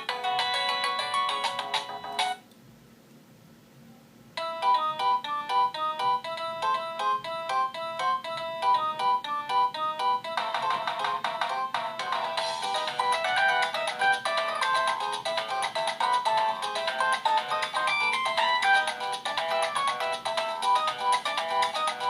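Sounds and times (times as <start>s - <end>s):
polyphonic ringtone synth notes: 4.4s - 22.0s.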